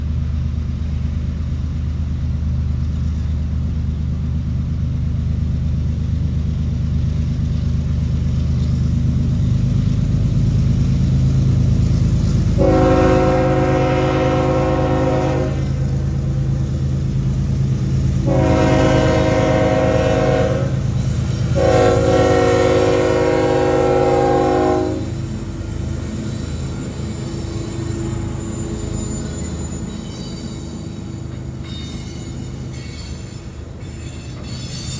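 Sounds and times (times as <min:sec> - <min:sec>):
diesel locomotive engine rumble: 0:00.0 - 0:34.9
locomotive air horn blasts: 0:12.5 - 0:16.4, 0:18.2 - 0:25.4.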